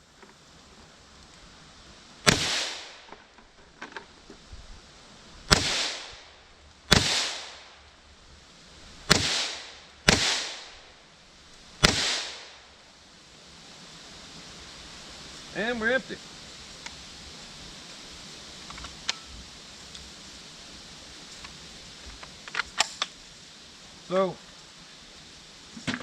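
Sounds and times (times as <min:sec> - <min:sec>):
gunshots with echo: 0:02.3 - 0:03.0, 0:05.5 - 0:06.1, 0:06.9 - 0:07.5, 0:09.1 - 0:10.7, 0:11.8 - 0:12.4.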